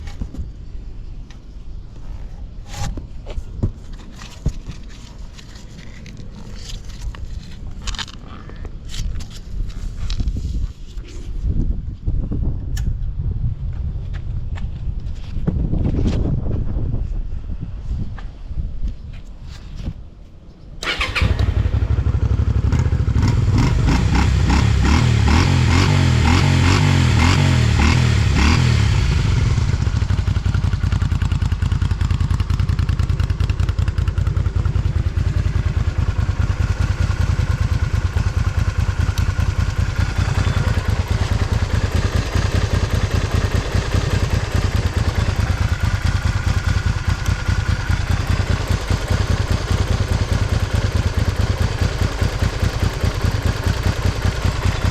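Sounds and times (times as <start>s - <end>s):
motorcycle engine starting and idling: 20.8s - 54.9s.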